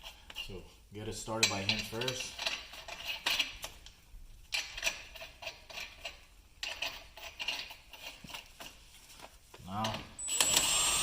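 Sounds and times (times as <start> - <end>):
lug nuts clinking and rattling: 1.3 - 8.8.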